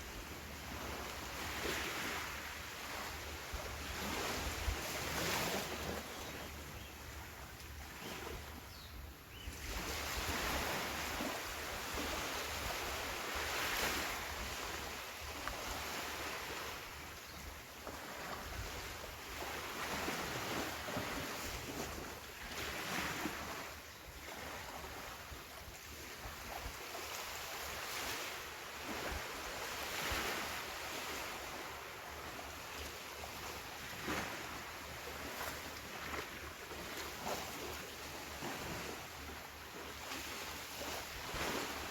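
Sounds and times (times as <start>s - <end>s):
ocean waves breaking on beach: 0.0s - 6.6s, 9.5s - 41.9s
wind on microphone: 2.9s - 6.4s.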